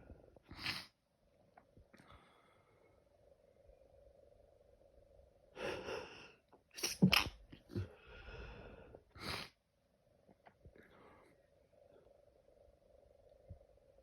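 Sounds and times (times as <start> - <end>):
person sneezing: 6.8 - 7.9.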